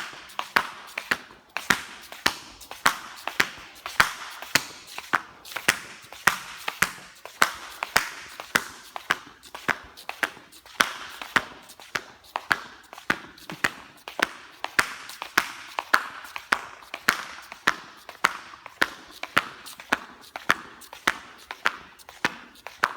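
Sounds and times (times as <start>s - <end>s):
flip-flops slapping: 0.5s - 14.0s.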